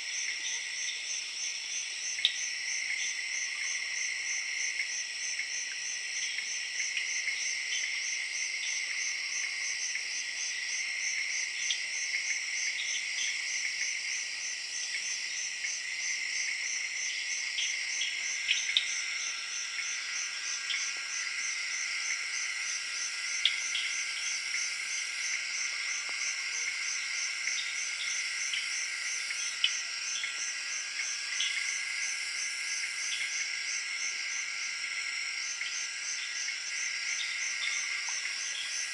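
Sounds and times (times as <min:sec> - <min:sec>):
pulsing insect trill: 0:15.3 - 0:38.9.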